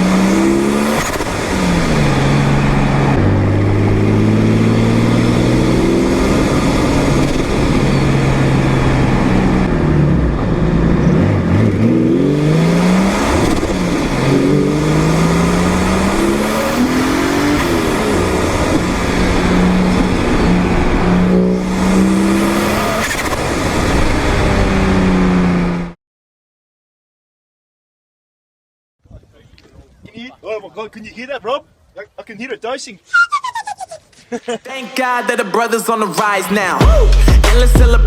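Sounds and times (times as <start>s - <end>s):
car engine revving: 0.0s - 26.0s.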